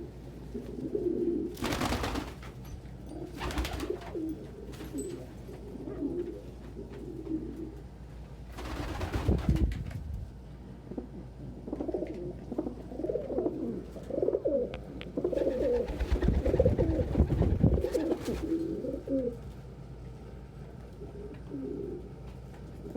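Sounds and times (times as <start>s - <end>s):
pigeons cooing: 0.0s - 2.2s, 3.1s - 8.0s, 11.0s - 19.4s, 21.0s - 22.2s.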